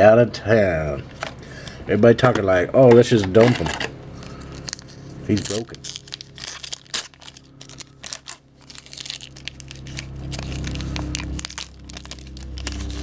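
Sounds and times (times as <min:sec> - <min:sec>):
wrapper tearing and crinkling: 0:03.4 - 0:13.0.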